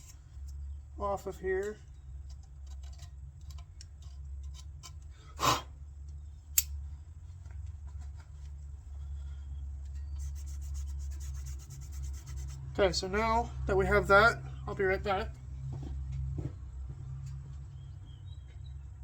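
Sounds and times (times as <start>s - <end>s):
scraping and rubbing: 0.0s - 0.6s, 2.2s - 5.0s, 9.8s - 12.8s
steady low hum: 0.0s - 19.0s
sharp click: 6.5s - 6.8s.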